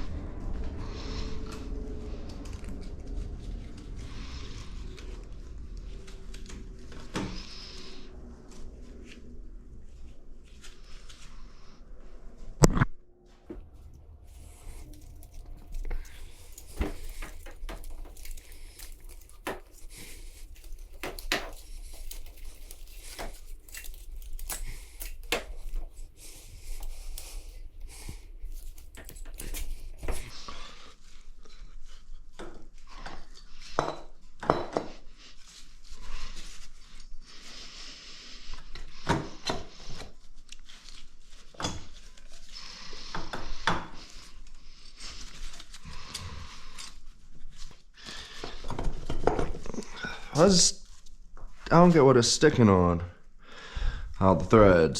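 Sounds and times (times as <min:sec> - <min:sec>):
low background hum: 0:00.0 - 0:32.5.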